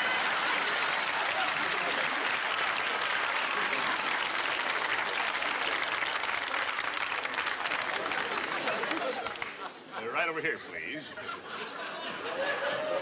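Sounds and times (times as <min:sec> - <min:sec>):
audience applauding: 0:00.0 - 0:09.7.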